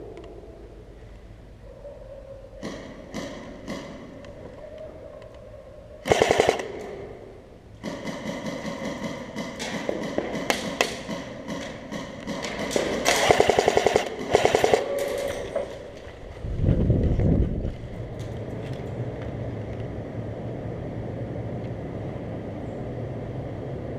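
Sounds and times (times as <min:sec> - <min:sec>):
airsoft guns firing: 0:02.6 - 0:04.2, 0:06.0 - 0:07.0, 0:07.8 - 0:16.0.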